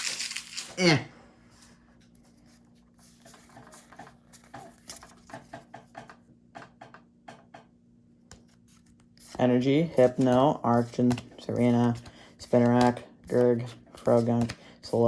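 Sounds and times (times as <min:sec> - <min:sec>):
trading cards clicking and rustling: 0:10.0 - 0:15.0.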